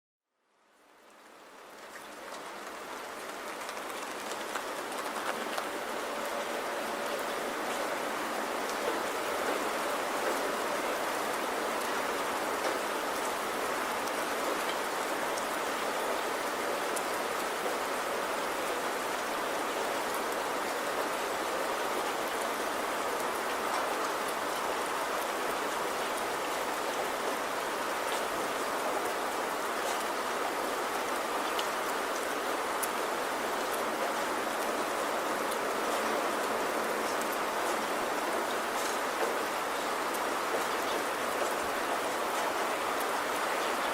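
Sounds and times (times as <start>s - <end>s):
steady rainfall: 0.3s - 43.9s
raindrop ticks: 1.6s - 5.9s.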